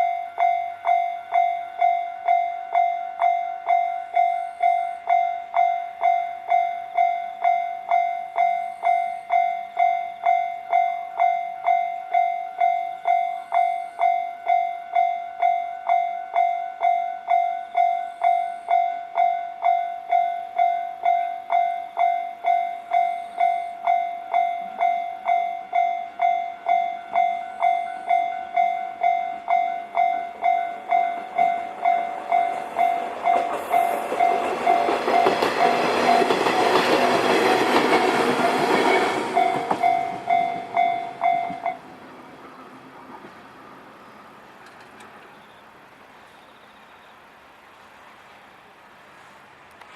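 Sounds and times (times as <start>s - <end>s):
level-crossing warning bell: 0.0s - 41.9s
approaching train noise: 0.0s - 49.9s.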